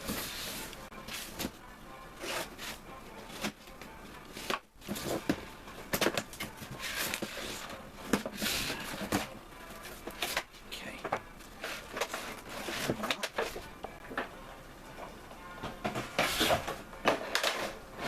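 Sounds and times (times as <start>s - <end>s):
cardboard scraping: 11.6s - 13.6s.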